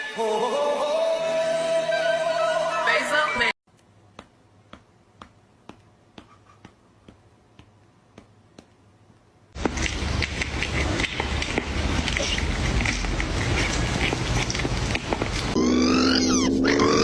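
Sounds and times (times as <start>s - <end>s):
loud dense crackling noise: 9.6s - 15.6s.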